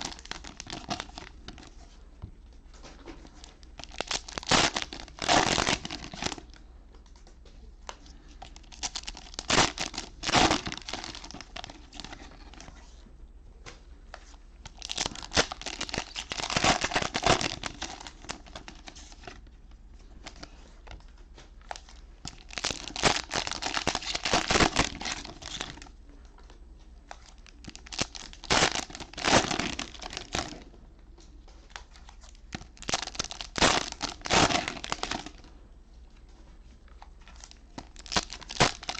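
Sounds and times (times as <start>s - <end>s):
cellophane wrappers tearing and crinkling: 0.0s - 1.7s, 3.4s - 6.6s, 8.5s - 12.6s, 14.7s - 19.4s, 21.7s - 25.9s, 27.1s - 30.6s, 32.0s - 35.5s, 37.2s - 38.9s.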